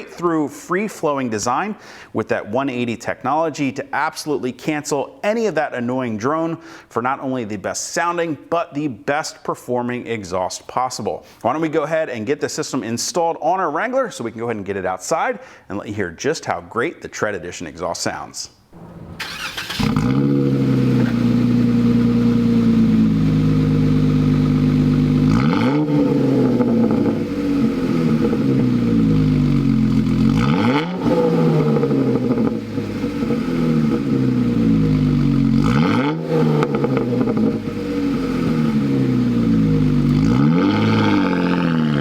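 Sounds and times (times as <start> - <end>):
car engine revving: 18.8 - 42.0.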